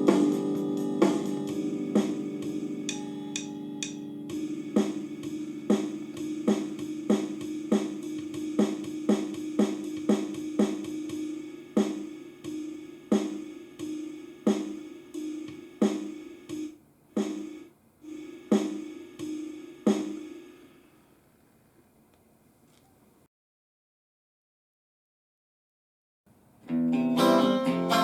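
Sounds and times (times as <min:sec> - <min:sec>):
drum machine beat: 0:00.0 - 0:20.4
snare drum: 0:04.7 - 0:05.1, 0:05.7 - 0:17.6, 0:18.5 - 0:20.4.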